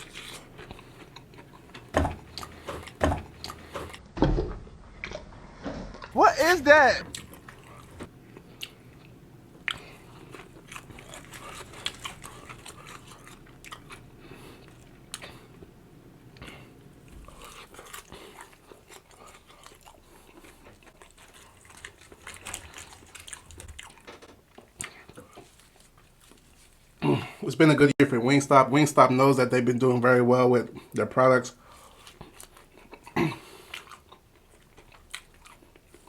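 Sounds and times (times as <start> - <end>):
person chewing crispy chicken: 0.0 - 4.0, 7.1 - 15.7, 16.3 - 27.0, 31.6 - 36.0.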